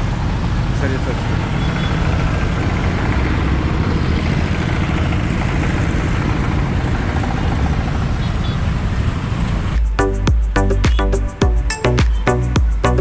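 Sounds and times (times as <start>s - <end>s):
vehicle moving on road: 0.0s - 9.8s.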